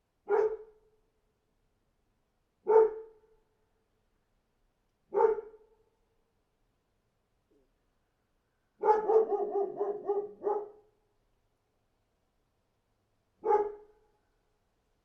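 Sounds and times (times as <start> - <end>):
dog barking: 0.2 - 0.8, 2.6 - 3.2, 5.1 - 5.7, 8.8 - 10.9, 13.4 - 14.0.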